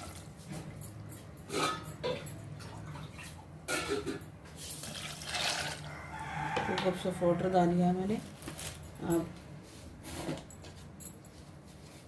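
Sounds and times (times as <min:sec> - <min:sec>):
water pouring into a pot: 0:04.7 - 0:05.9.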